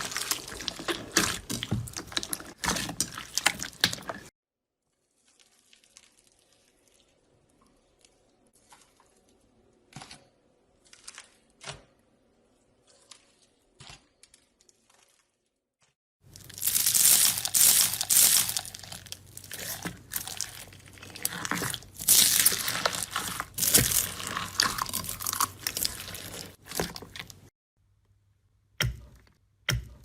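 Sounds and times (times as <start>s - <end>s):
slime crackling and popping: 0.0s - 4.3s, 16.3s - 27.5s.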